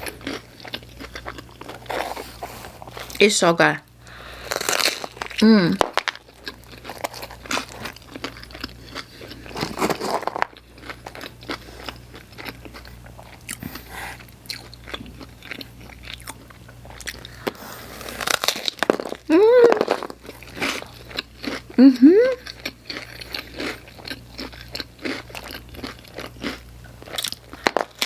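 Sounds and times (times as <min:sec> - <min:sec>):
crunchy chewing: 0:00.0 - 0:03.2, 0:04.1 - 0:28.0.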